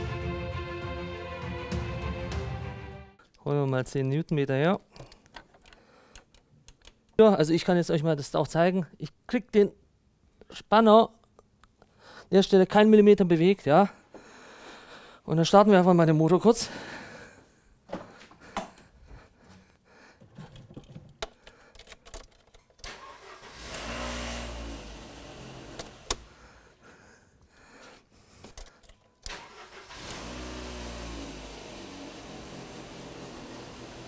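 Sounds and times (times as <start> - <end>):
clicks: 3.3 - 7.2
car engine starting and running: 22.8 - 26.5, 29.3 - 34.0.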